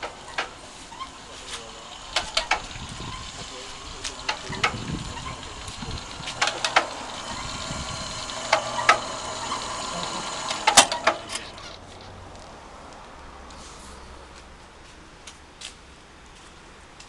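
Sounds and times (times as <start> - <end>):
pump humming: 0.0 - 11.8
sharp metallic knocks: 4.1 - 11.7.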